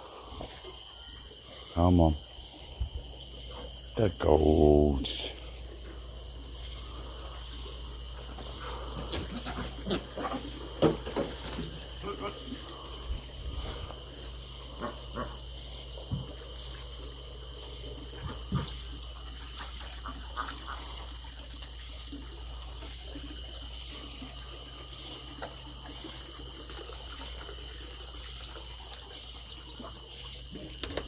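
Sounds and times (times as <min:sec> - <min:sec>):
crickets trilling: 0:00.0 - 0:31.0
thumps and rustles: 0:08.4 - 0:12.0.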